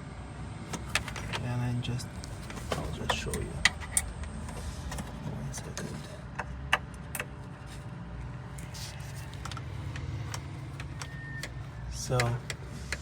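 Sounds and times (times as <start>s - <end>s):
probes clicking and tapping: 9.4s - 13.0s.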